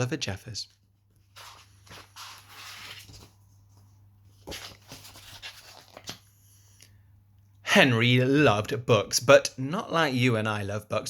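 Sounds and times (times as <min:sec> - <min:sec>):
paper page rustling: 0:01.2 - 0:06.3.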